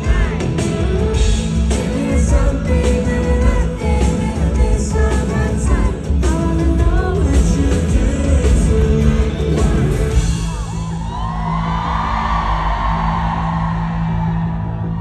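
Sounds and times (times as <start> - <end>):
person singing: 0.0 - 10.8
live pop-rock band: 0.0 - 13.3
crowd cheering: 9.5 - 15.0.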